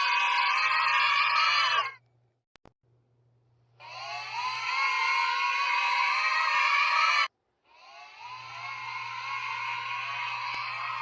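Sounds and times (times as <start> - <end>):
children screaming and cheering: 0.0 - 2.0, 3.8 - 11.0.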